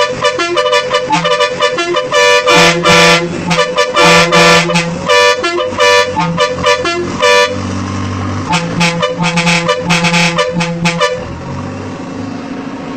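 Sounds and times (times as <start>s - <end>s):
musical bus air horn: 0.0s - 7.7s, 8.4s - 11.4s.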